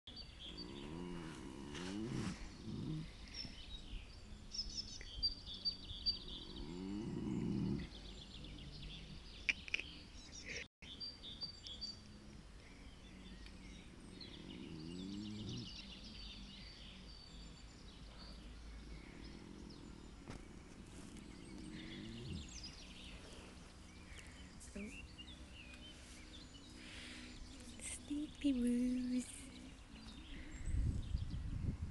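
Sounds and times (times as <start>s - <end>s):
birds chirping: 0.1s - 31.9s
horse snoring: 0.4s - 3.7s, 6.2s - 9.4s, 13.1s - 17.0s, 17.7s - 25.4s.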